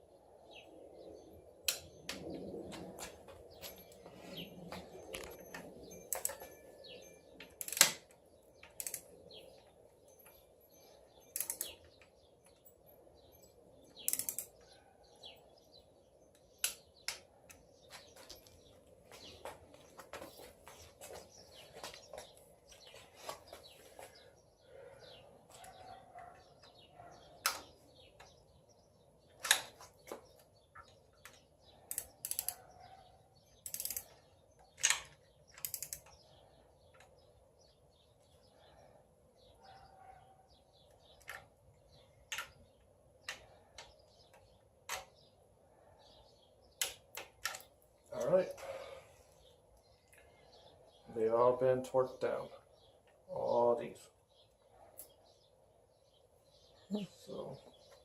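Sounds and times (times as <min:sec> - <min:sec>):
hand tools clicking and clinking: 0:04.7 - 0:12.8, 0:13.9 - 0:14.7, 0:31.2 - 0:32.6, 0:33.6 - 0:36.2.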